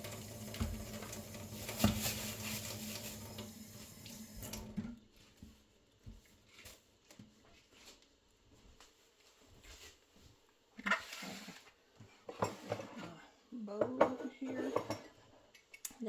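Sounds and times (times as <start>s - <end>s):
water running from tap: 0.0s - 4.8s.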